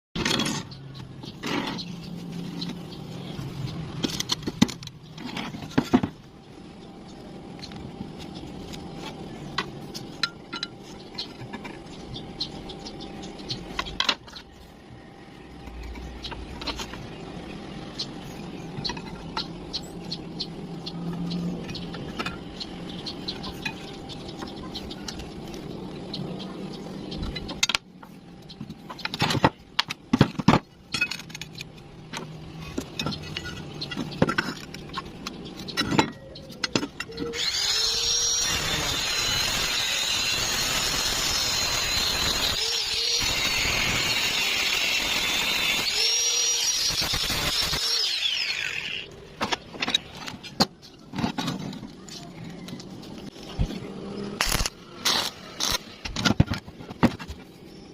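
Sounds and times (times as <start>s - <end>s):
metal parts clinking: 29.0s - 37.7s.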